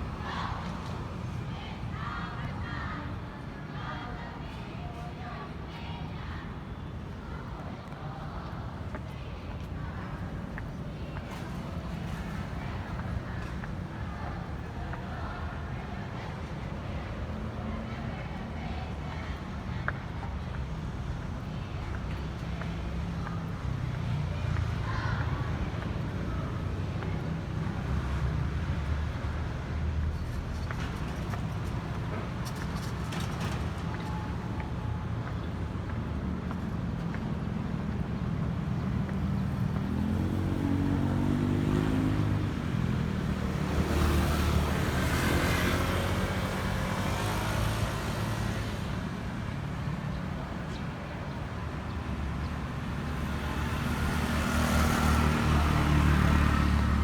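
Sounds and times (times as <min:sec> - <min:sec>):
low rumble of traffic: 0:00.0 - 0:57.0
passing vehicle engine: 0:39.3 - 0:49.0, 0:52.7 - 0:57.0.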